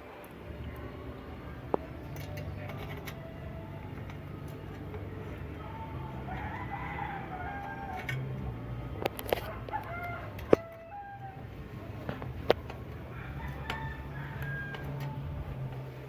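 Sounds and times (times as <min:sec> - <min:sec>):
rooster crowing: 0:06.0 - 0:08.6, 0:09.3 - 0:11.6, 0:12.9 - 0:15.6.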